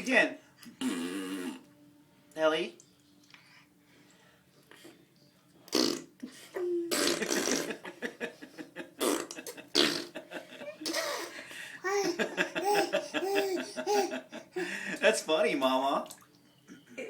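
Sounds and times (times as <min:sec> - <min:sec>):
baby blowing raspberries: 0:00.7 - 0:01.7, 0:05.7 - 0:06.0, 0:06.9 - 0:07.7
laughter: 0:07.6 - 0:15.0.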